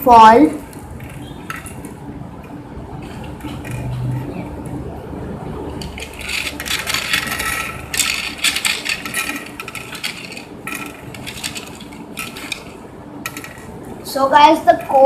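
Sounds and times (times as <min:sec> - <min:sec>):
plastic pegs clattering: 0:05.8 - 0:13.8.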